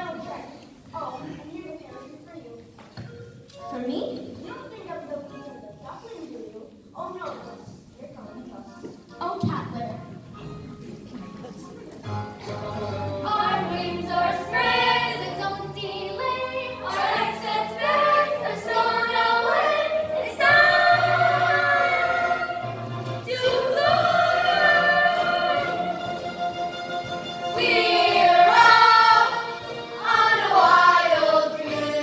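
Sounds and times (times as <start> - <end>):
instrumental accompaniment: 8.7 - 32.0
group singing show tune: 12.5 - 26.2, 27.5 - 32.0.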